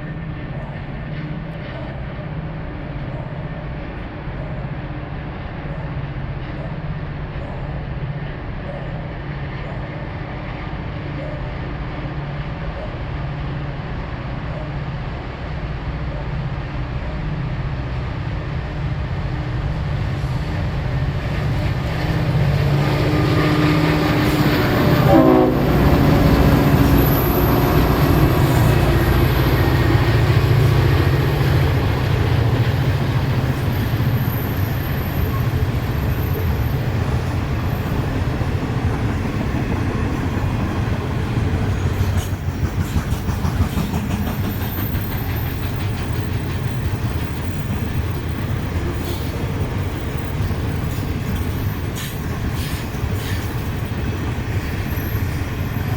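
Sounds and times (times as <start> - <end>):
locomotive engine rumble: 19.1 - 55.9
train horn: 21.5 - 38.9
wagons clattering on rails: 33.3 - 55.9.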